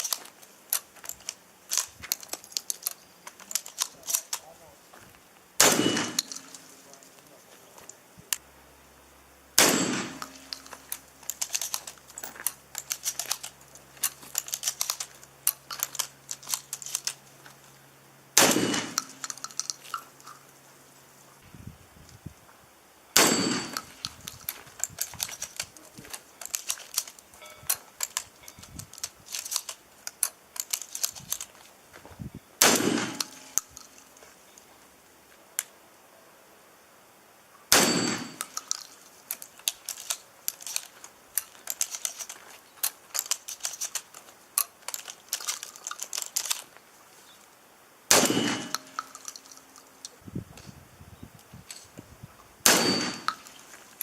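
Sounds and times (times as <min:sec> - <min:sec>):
ringing clang of steel: 0:05.6 - 0:06.6, 0:09.6 - 0:10.8, 0:23.2 - 0:24.1, 0:27.4 - 0:27.8, 0:37.7 - 0:38.6, 0:48.1 - 0:49.2, 0:52.7 - 0:53.6
shotgun shots: 0:05.6 - 0:06.8, 0:09.6 - 0:10.8, 0:18.4 - 0:19.2, 0:23.2 - 0:24.1, 0:32.6 - 0:33.6, 0:37.7 - 0:38.6, 0:48.1 - 0:49.1, 0:52.6 - 0:53.6
faint sharp cracks and pings: 0:05.6 - 0:08.4, 0:09.6 - 0:17.6, 0:18.4 - 0:20.6, 0:23.2 - 0:31.4, 0:32.6 - 0:34.7, 0:37.6 - 0:46.7, 0:48.1 - 0:50.1, 0:52.7 - 0:54.0.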